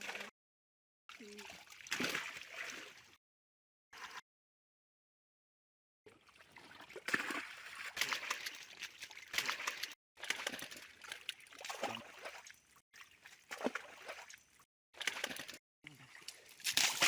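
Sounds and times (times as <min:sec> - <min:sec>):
water sloshing and splashing: 0:00.0 - 0:00.3, 0:01.1 - 0:03.2, 0:06.1 - 0:17.0.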